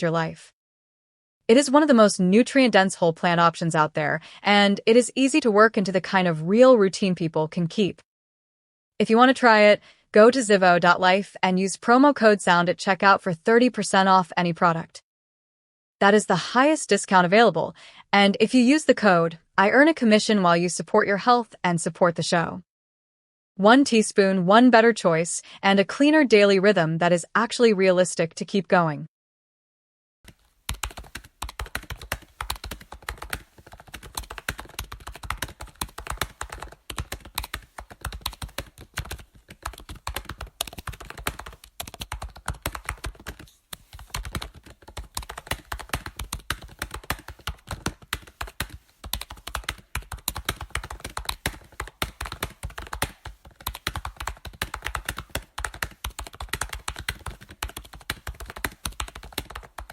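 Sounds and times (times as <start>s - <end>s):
computer keyboard typing: 30.3s - 59.9s.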